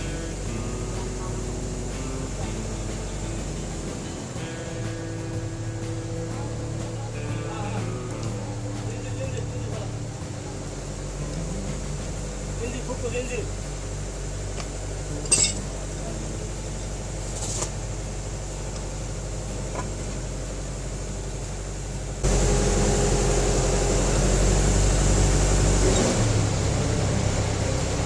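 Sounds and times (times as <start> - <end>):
metal clinks: 15.2 - 15.8, 17.2 - 17.9.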